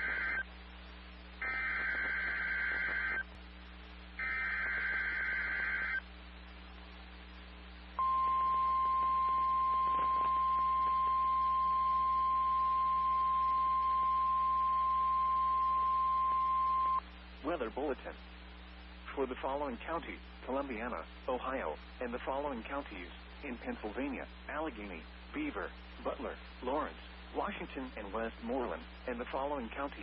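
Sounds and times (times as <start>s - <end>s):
buzzing digital data bursts: 0.0s - 0.4s, 1.4s - 3.3s, 4.2s - 6.0s
steady warning alarm tone: 1.4s - 3.2s, 4.2s - 6.0s, 8.0s - 17.0s.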